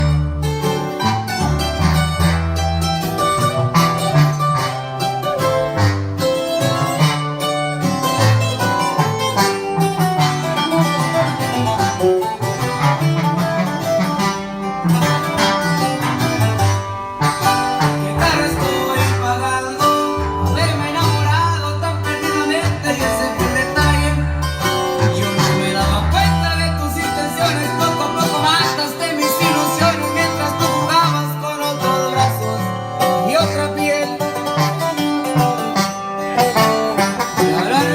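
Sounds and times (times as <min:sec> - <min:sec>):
country music with guitar and banjo: 0:00.0 - 0:37.9
person singing: 0:10.2 - 0:37.9.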